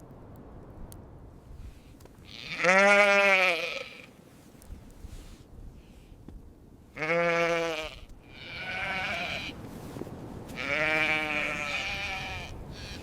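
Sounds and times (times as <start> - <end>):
sheep bleating: 2.3 - 4.1, 7.0 - 9.6, 10.6 - 13.0.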